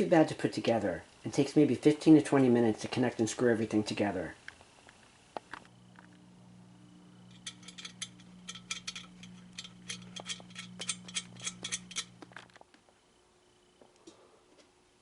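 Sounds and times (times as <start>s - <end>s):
faint low hum: 0.0s - 15.0s
ratchet tool clicking: 7.3s - 12.1s.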